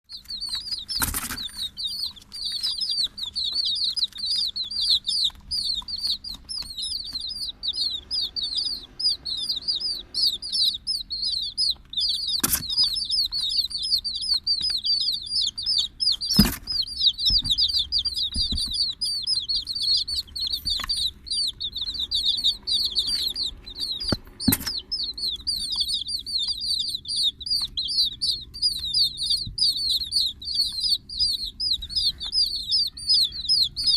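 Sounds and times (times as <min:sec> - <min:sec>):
chicks peeping: 0:00.0 - 0:33.9.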